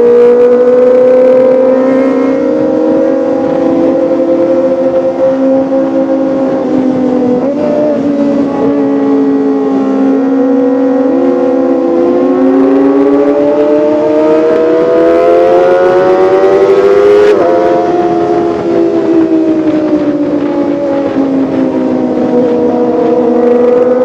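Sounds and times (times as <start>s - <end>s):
motorcycle engine high revs whine: 0.0s - 24.0s.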